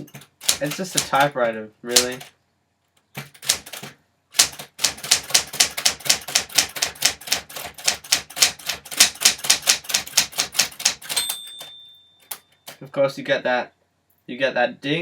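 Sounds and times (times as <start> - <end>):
typewriter typing fast: 0.0 - 2.3, 3.1 - 11.7.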